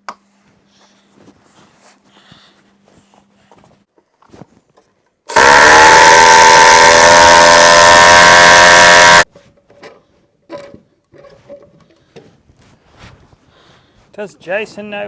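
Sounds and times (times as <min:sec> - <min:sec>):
power tool motor whining: 0:05.3 - 0:09.2.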